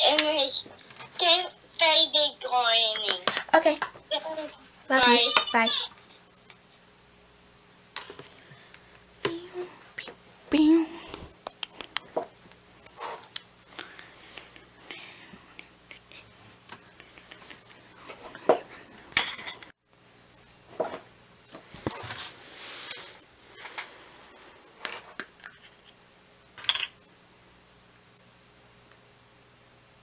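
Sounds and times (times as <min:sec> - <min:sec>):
small objects clinking on table: 0:26.6 - 0:27.0.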